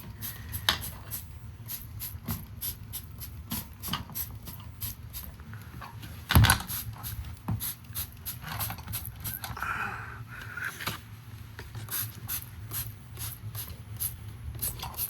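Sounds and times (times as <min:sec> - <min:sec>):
spray bottle hissing spurts: 0:00.0 - 0:05.3, 0:06.6 - 0:09.5, 0:11.8 - 0:15.0
low steady hum: 0:00.0 - 0:15.0.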